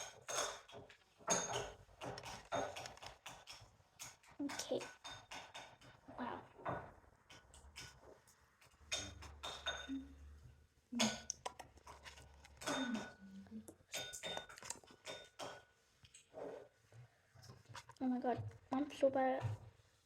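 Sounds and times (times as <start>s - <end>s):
plastic dishes clinking: 0.0s - 5.8s, 8.6s - 10.1s, 11.0s - 15.6s.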